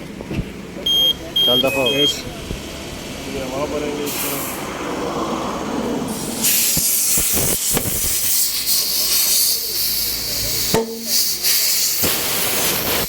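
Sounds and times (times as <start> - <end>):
compressed air hissing: 4.0 - 4.7, 5.9 - 13.0.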